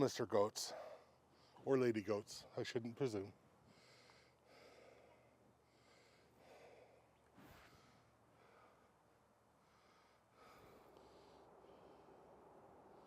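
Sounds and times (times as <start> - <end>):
soft breathy puffs: 0.6 - 1.7, 3.6 - 13.0.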